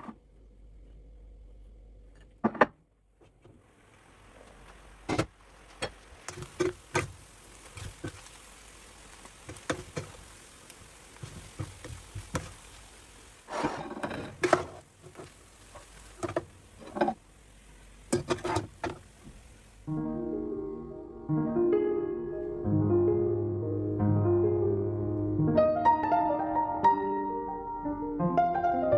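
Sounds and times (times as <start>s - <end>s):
rustling: 3.2s - 17.2s
objects clicking and knocking: 9.5s - 10.2s.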